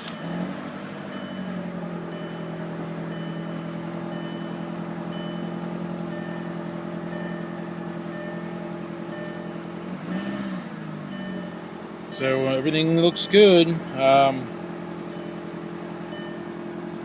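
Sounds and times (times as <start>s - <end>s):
car engine idling: 0.0s - 17.0s
faint short high beeps: 10.2s - 11.7s, 15.1s - 16.6s.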